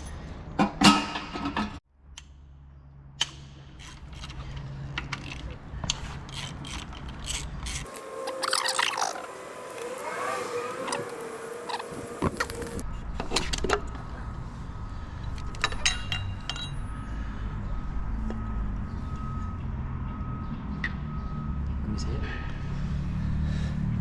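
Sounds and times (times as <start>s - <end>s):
metallic clicks of tools: 5.0s - 9.0s.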